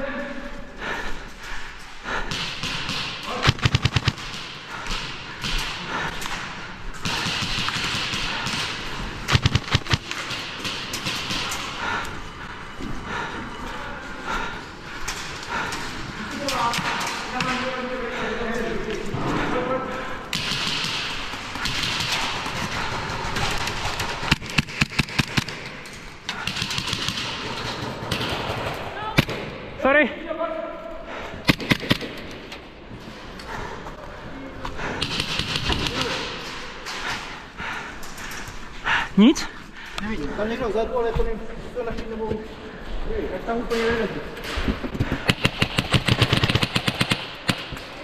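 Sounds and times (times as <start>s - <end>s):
footsteps: 0.0s - 26.5s
airsoft gun burst: 45.3s - 47.9s.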